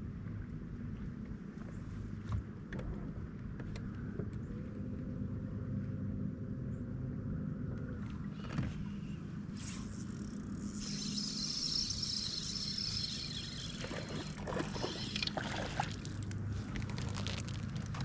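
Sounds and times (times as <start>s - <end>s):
boat motor running: 2.8s - 18.0s
higher whirr: 7.8s - 16.6s.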